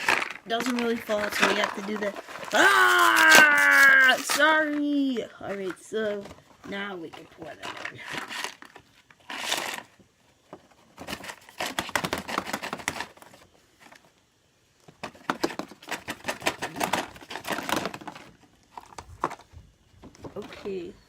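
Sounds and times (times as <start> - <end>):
small candies rattling as poured: 0.0 - 4.9.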